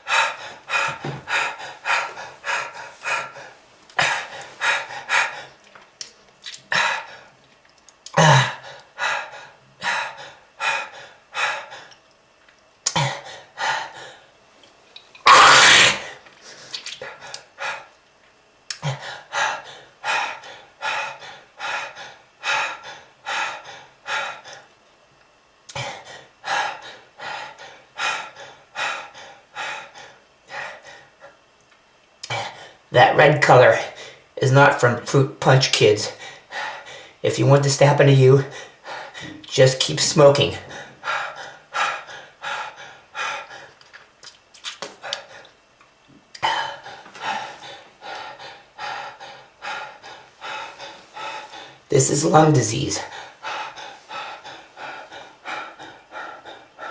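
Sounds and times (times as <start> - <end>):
person hacking cough: 8.1 - 8.6, 15.2 - 16.0.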